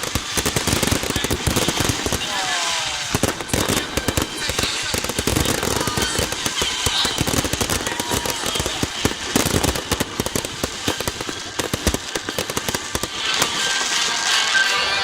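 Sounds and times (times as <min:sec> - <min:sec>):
fireworks crackling bangs: 0:00.0 - 0:15.0.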